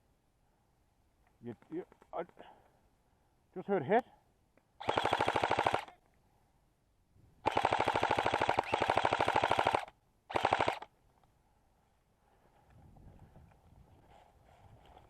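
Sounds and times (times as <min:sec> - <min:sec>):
airsoft gun firing bursts: 0:04.8 - 0:06.0, 0:07.4 - 0:10.9.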